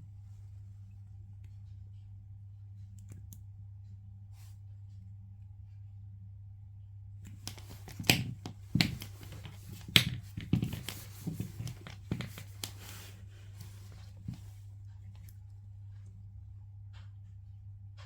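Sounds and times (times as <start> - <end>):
clicks and rustles of cables handled: 7.2 - 16.1.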